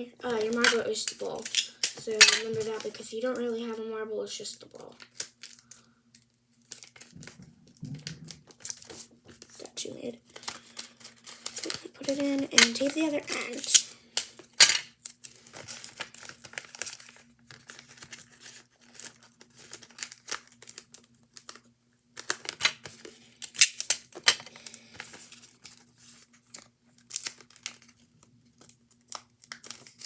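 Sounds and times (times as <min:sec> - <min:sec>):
sticky tape tearing and crinkling: 0:10.3 - 0:21.6, 0:22.2 - 0:28.0, 0:28.6 - 0:30.0.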